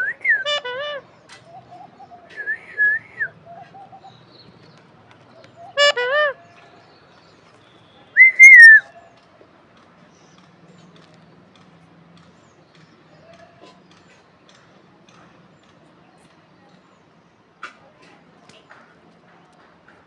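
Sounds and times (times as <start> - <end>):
parakeet whistling and calling: 8.2 - 8.9.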